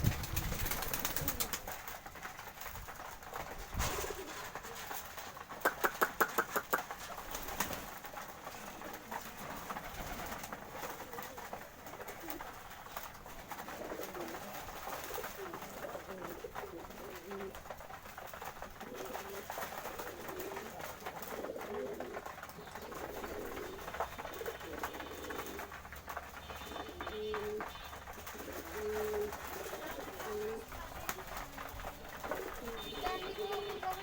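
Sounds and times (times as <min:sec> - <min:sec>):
pigeons cooing: 0:00.0 - 0:02.0, 0:03.0 - 0:34.0.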